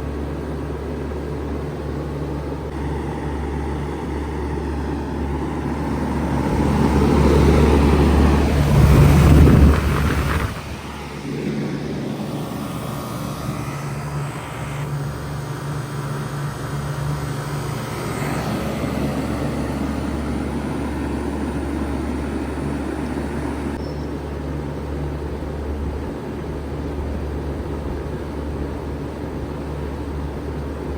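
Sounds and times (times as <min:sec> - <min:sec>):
heat pump humming: 0:00.0 - 0:30.9.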